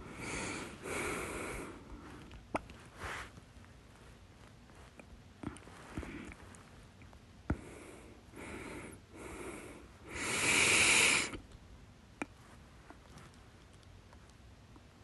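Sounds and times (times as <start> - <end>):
breathy breaths: 0.0 - 3.4, 5.4 - 6.5, 7.5 - 11.4.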